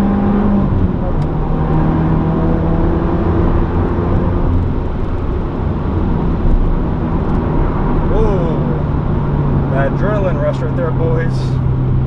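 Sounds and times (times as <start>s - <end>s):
car engine droning: 0.0s - 12.0s.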